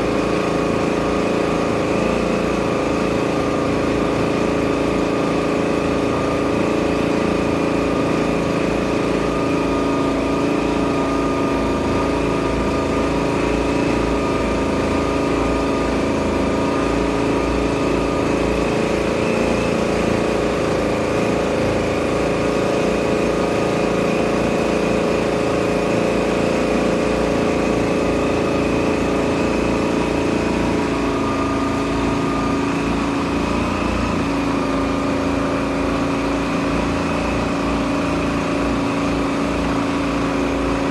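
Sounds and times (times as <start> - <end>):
boat engine droning: 0.0 - 40.9.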